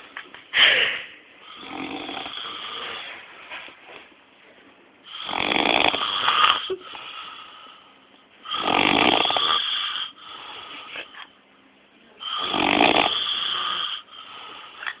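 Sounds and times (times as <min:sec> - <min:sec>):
man snoring loudly: 0:01.4 - 0:03.0, 0:05.1 - 0:07.3, 0:08.4 - 0:10.7, 0:12.2 - 0:14.4.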